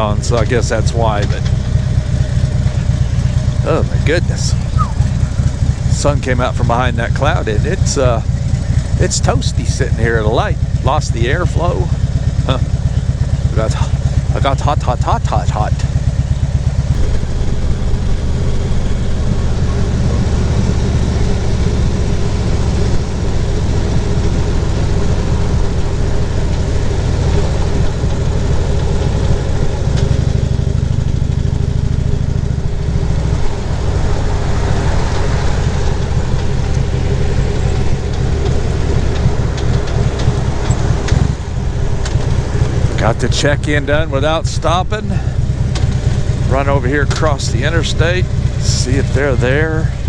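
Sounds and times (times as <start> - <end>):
motorcycle engine running: 0.0 - 50.0
rushing wind noise: 32.2 - 50.0.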